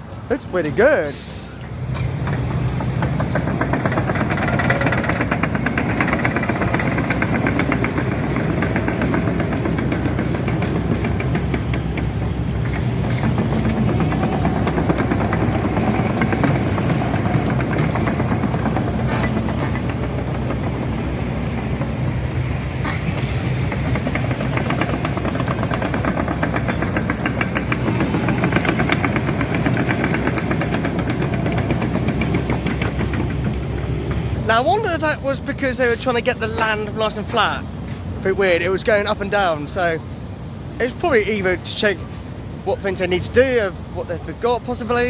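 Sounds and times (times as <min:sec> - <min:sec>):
diesel machinery engine hum: 0:00.0 - 0:45.0
fast metallic clatter: 0:01.9 - 0:37.4.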